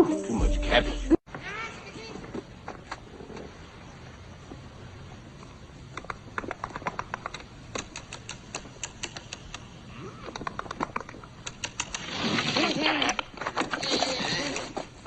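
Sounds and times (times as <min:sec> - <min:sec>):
sharp clicks and taps: 0:05.9 - 0:09.7, 0:10.3 - 0:12.0.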